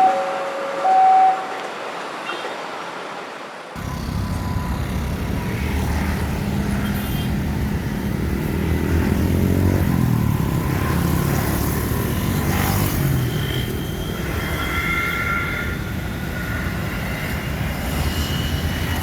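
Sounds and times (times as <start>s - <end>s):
vehicle engine drone: 3.8s - 19.0s.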